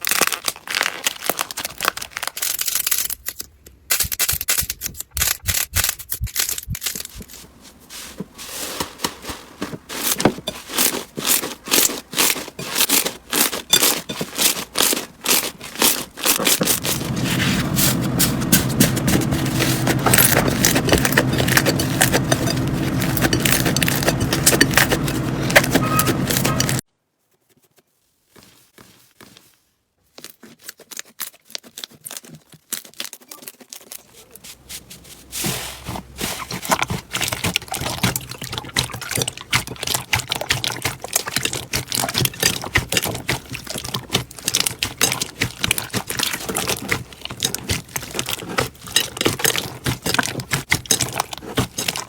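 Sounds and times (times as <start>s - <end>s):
low hum with crackling: 15.1s - 26.8s.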